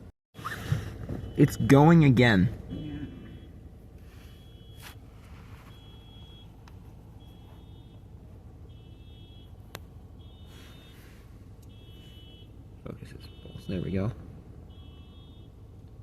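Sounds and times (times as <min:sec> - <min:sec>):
car alarm beeping: 0:00.4 - 0:15.9.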